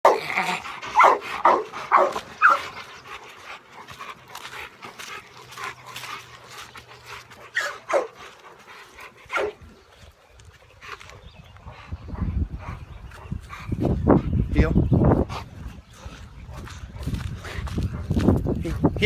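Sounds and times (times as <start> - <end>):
dog giving yelping barks: 0.0 - 2.8, 7.5 - 8.3, 9.3 - 9.6.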